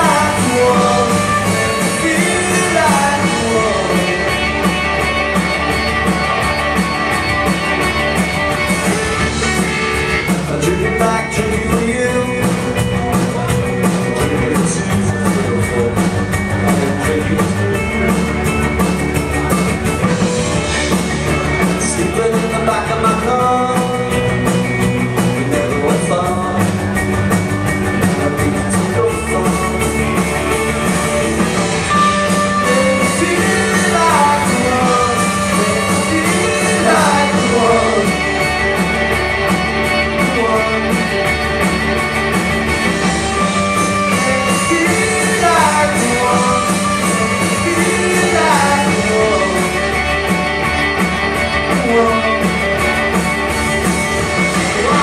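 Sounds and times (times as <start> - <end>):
person singing: 0.0 - 5.4, 10.2 - 18.5, 21.6 - 24.4, 25.2 - 26.8, 28.0 - 30.1, 31.9 - 39.0, 39.9 - 41.3, 43.3 - 53.0, 54.3 - 55.0
guitar: 0.0 - 55.0
steady drum beat: 0.0 - 55.0.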